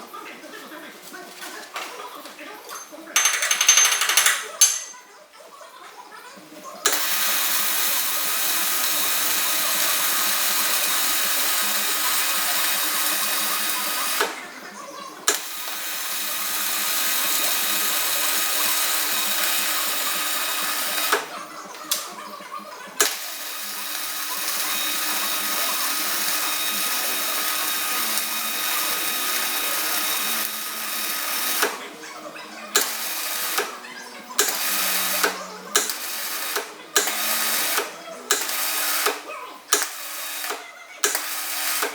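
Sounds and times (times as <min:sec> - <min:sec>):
welding arc hissing and crackling: 0:06.9 - 0:14.3, 0:15.3 - 0:21.3, 0:23.0 - 0:31.8, 0:32.8 - 0:33.7, 0:34.4 - 0:41.9.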